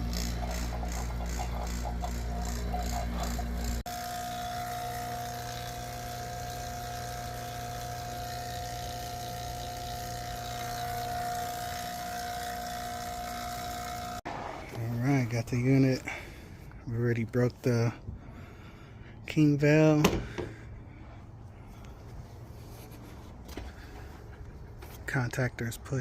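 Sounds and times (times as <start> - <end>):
machine humming: 0.0 - 16.8.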